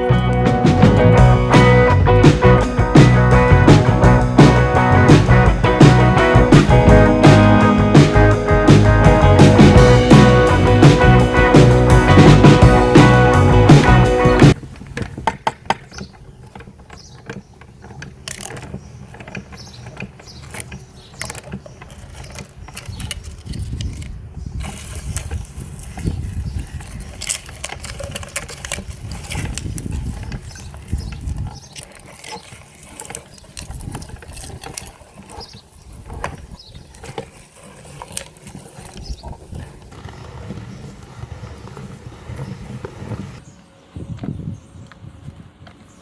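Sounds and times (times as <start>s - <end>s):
meat grinder clicking and cracking: 0.0s - 5.8s, 15.6s - 43.4s.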